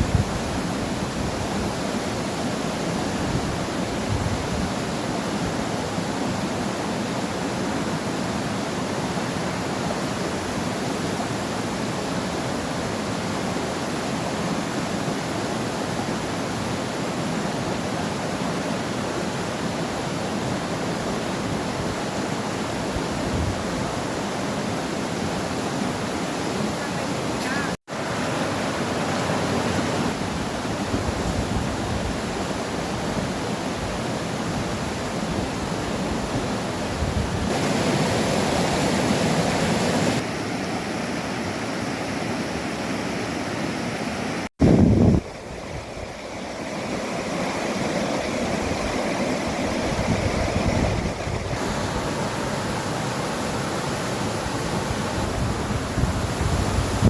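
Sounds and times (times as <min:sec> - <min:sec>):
strong wind buffeting microphone: 0:00.0 - 0:02.0, 0:29.8 - 0:40.2, 0:44.6 - 0:52.9, 0:53.6 - 0:57.0.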